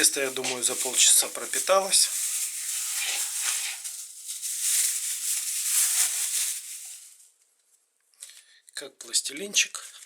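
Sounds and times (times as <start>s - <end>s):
plastic bag rustling: 0.0s - 7.4s.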